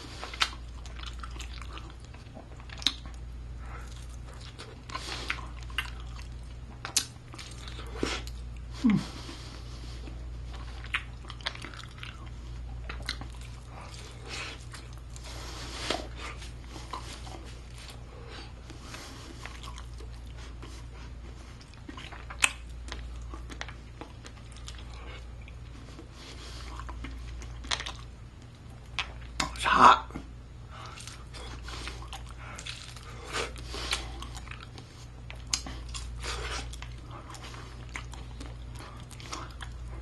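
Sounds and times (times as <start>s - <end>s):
person chewing: 0.0s - 40.0s
steady low hum: 0.0s - 40.0s
wet smacks and clicks: 6.8s - 7.7s, 21.7s - 24.8s.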